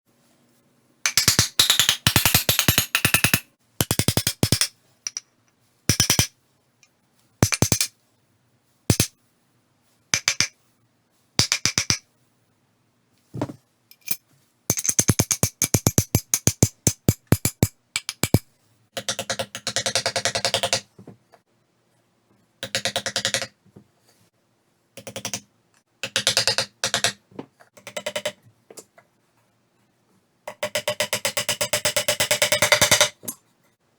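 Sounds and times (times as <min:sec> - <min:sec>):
tools striking wood: 0:01.1 - 0:05.2, 0:05.9 - 0:06.3, 0:07.4 - 0:07.9, 0:08.9 - 0:09.1, 0:13.4 - 0:18.5.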